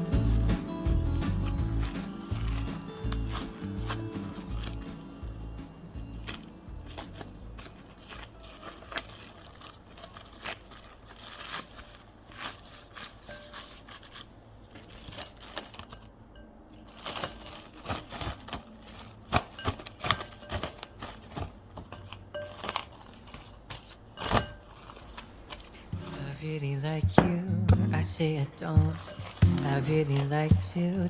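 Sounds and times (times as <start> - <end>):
rustling and crinkling: 0.0 - 27.3, 28.0 - 31.0.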